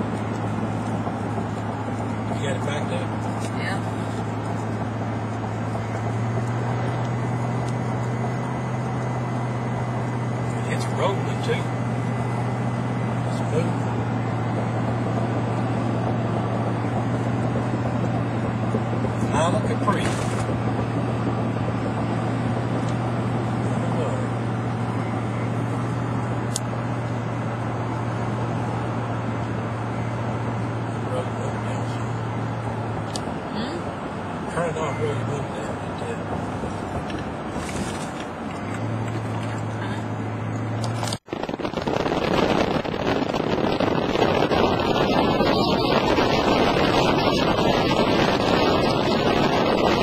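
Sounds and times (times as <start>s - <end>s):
road and wind noise: 0.0s - 50.0s
vehicle engine hum: 0.0s - 50.0s.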